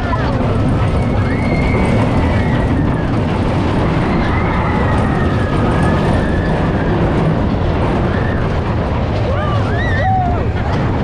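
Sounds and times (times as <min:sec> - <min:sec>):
roller coaster rumbling on track: 0:00.0 - 0:11.0.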